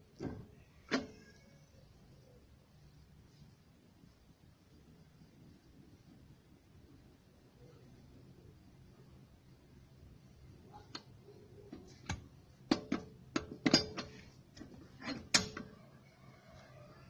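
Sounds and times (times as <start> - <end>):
metal hand tools clanking: 12.7 - 14.2.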